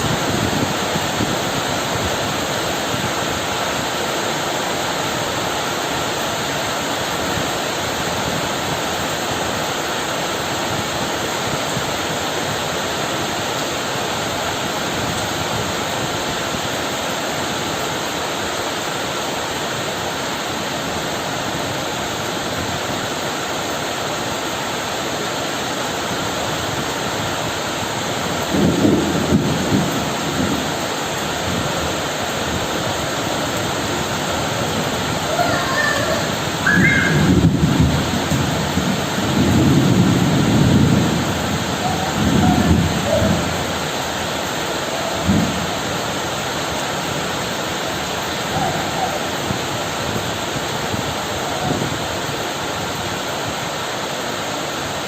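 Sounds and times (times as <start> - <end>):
heavy rain falling: 0.0 - 55.0
rumbling thunder: 28.3 - 31.8, 34.0 - 44.2, 44.8 - 46.2.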